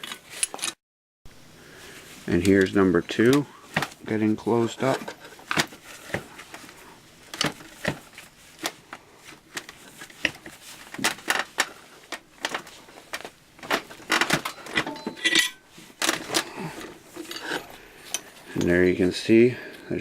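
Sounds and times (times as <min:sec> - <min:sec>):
chain and vise clanking: 0:14.1 - 0:15.6, 0:17.2 - 0:18.8
metallic ring: 0:14.5 - 0:15.7.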